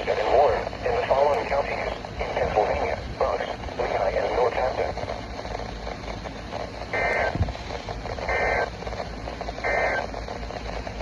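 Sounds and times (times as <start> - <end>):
radio static: 0.0 - 11.0
screeching digital data bursts: 8.3 - 8.7, 9.6 - 10.1.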